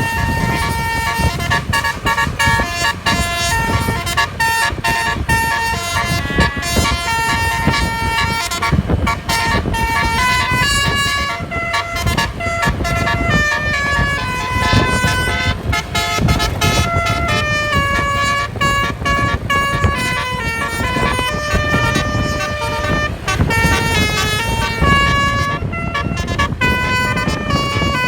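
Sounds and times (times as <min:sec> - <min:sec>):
multi-tone bus horn tune: 0:00.0 - 0:28.0.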